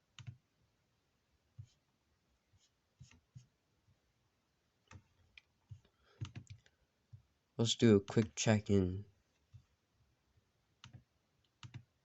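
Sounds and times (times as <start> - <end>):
laptop keys and touchpad clicks: 6.2 - 6.6.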